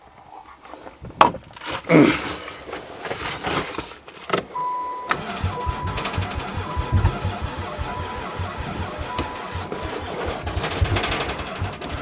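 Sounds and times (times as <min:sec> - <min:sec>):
dashboard warning beep: 0:04.6 - 0:10.2
starter cranking engine: 0:05.0 - 0:12.0
knocks and rustling: 0:05.2 - 0:12.0.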